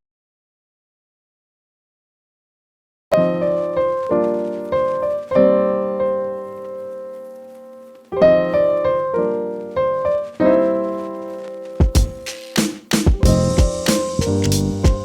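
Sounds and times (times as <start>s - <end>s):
piano notes and chords: 3.1s - 15.0s.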